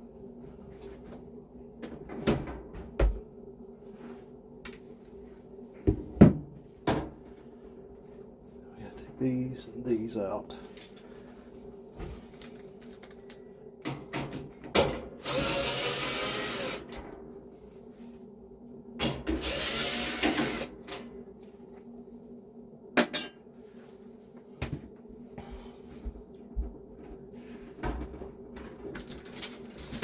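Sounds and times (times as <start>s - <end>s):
power drill running: 15.2s - 16.8s, 19.4s - 20.7s.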